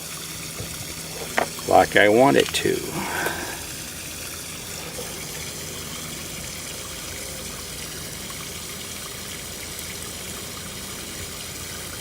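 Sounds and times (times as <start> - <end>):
water running out of a valve: 0.0 - 12.0.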